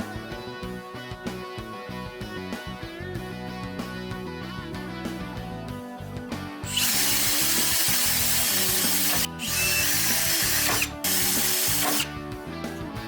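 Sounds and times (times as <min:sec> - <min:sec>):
background music: 0:00.0 - 0:13.0
power tool hissing: 0:06.7 - 0:12.1.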